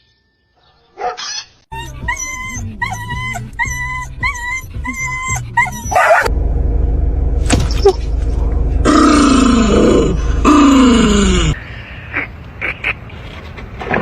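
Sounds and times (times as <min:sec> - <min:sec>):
dog yipping: 0:01.0 - 0:06.3
low hum with noise: 0:06.3 - 0:11.6.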